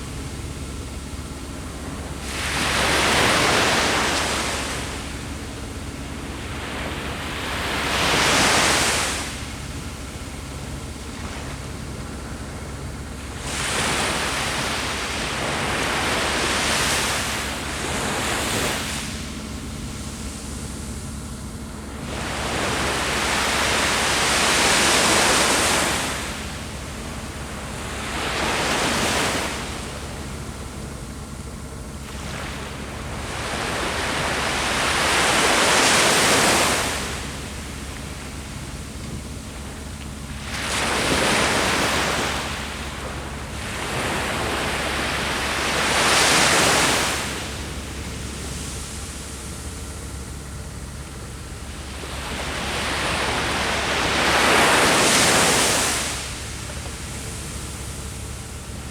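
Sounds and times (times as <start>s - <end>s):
sea waves breaking on shore: 0.0s - 58.9s.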